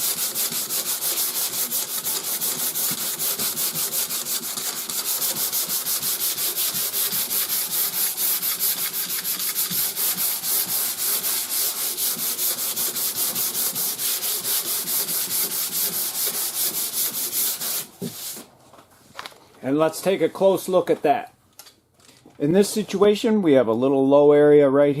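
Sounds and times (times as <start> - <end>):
sandpaper rasping on sanding block: 0.0 - 18.5.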